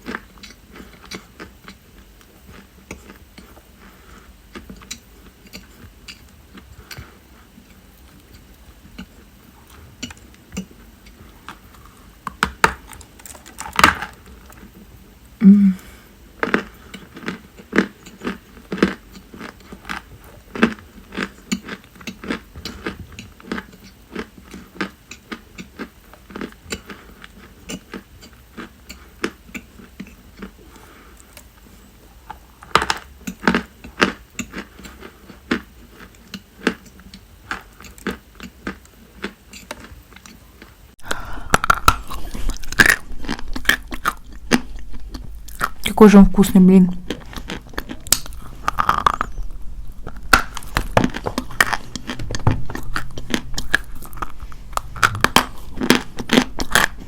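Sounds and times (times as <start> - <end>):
chalk being chewed: 0.0 - 12.0, 33.2 - 45.9, 46.9 - 57.0
brief low hum: 41.0 - 57.0.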